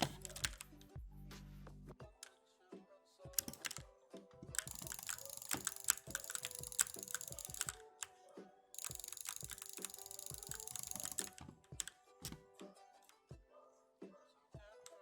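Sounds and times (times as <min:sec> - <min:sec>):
mechanical keyboard typing: 0:00.0 - 0:00.8, 0:03.4 - 0:03.8, 0:04.6 - 0:07.9, 0:08.8 - 0:12.4.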